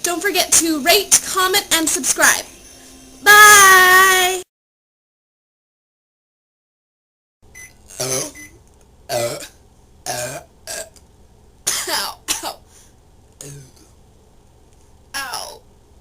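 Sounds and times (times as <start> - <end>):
woman burping: 7.9 - 8.4, 9.1 - 9.5, 10.1 - 11.0.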